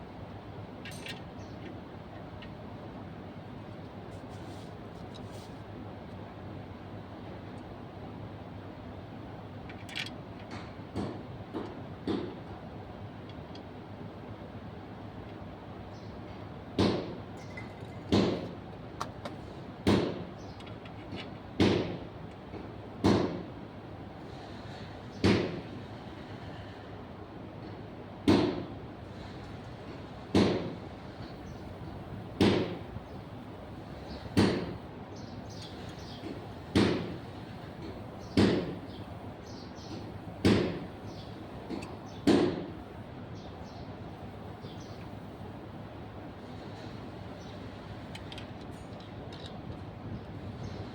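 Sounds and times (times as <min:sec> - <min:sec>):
sharp knocks: 0:32.4 - 0:32.9, 0:34.1 - 0:34.8, 0:36.2 - 0:38.8, 0:40.0 - 0:41.0, 0:41.7 - 0:42.8.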